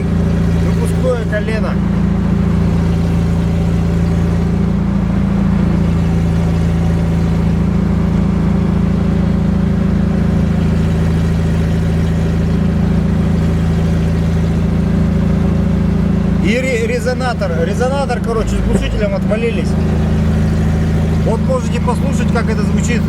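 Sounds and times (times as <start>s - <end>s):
deep car exhaust drone: 0.0s - 23.0s.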